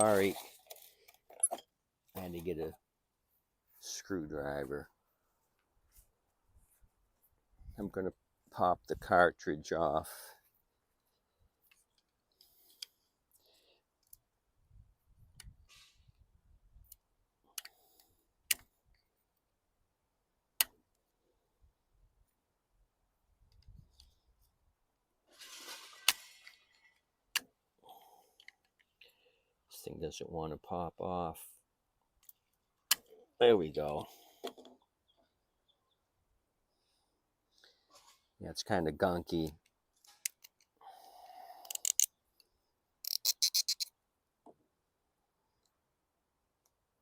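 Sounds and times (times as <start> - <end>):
light clicks of parts: 28.4 - 29.2, 39.4 - 40.8, 41.6 - 43.9
screwdriver scraping metal: 43.0 - 43.9.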